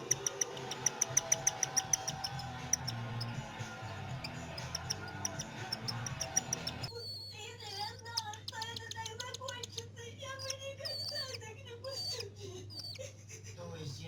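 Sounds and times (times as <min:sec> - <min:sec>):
background music: 0:00.0 - 0:06.9
bird chicks begging calls: 0:00.0 - 0:13.1.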